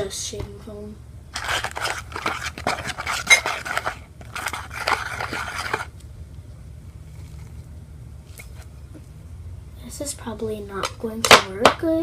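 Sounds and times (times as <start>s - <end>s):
low steady hum: 0.0s - 12.0s
slime scraping and squishing: 1.3s - 5.9s.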